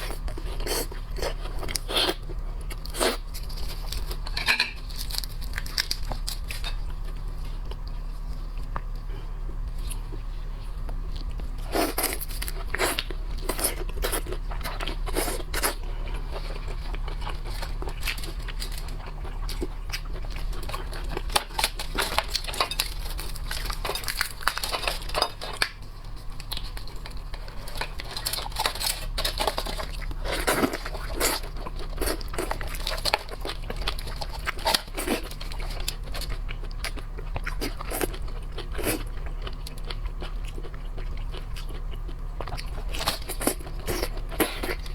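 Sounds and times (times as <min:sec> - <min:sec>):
crunching and chewing: 0:00.0 - 0:44.9
shells cracking and tearing: 0:03.5 - 0:06.7, 0:17.1 - 0:36.3.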